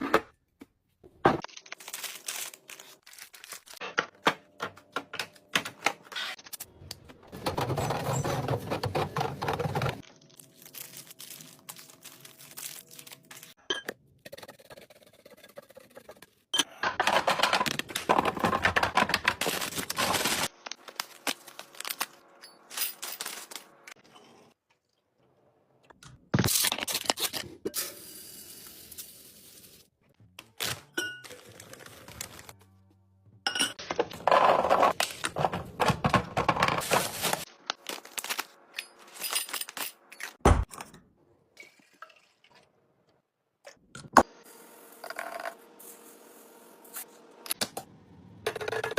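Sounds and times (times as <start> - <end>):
packaging rustling: 1.5 - 3.8, 10.3 - 13.6.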